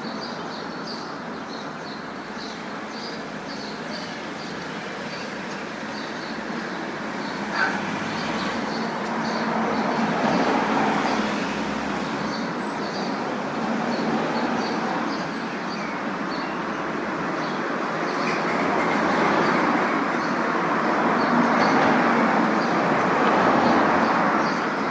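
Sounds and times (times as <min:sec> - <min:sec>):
road traffic noise: 0:00.0 - 0:24.9.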